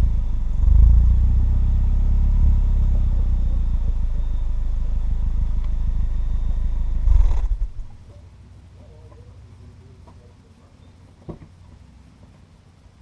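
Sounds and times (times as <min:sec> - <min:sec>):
car exhaust idling drone: 0:00.0 - 0:13.0.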